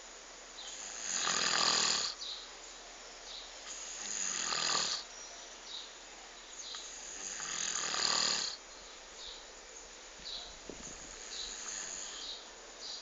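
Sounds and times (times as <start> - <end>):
person snoring: 0.8 - 2.2, 3.7 - 5.0, 7.0 - 8.6, 11.2 - 12.3.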